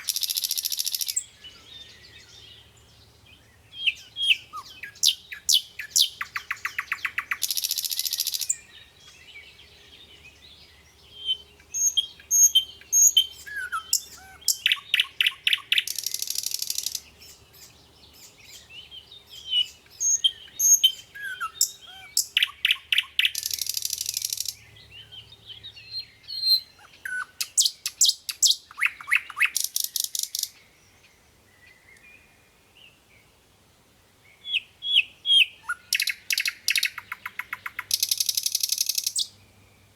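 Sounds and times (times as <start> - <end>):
bird fast trill: 0.0 - 1.2, 4.3 - 8.6, 11.8 - 17.1, 20.0 - 24.6, 35.6 - 39.3
bird chirps and whistles: 11.2 - 17.0, 34.5 - 39.3.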